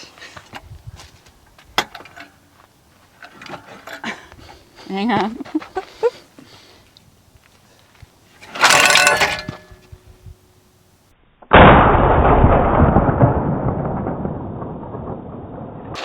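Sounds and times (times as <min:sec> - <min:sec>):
clay target thrower clatter: 0:08.4 - 0:09.8.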